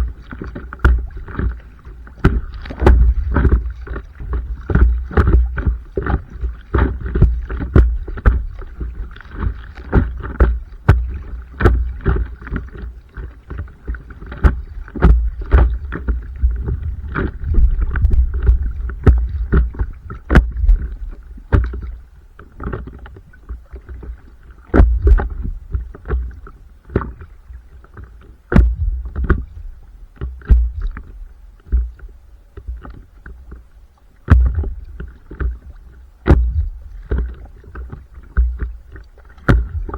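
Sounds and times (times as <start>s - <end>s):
water splashing against board: 0.0s - 27.3s, 27.9s - 33.6s, 34.2s - 39.9s
low rumble: 2.3s - 5.8s, 36.4s - 37.1s.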